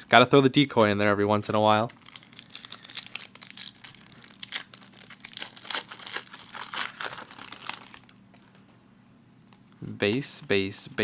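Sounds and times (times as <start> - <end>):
foil wrapper tearing and crinkling: 2.0 - 8.2.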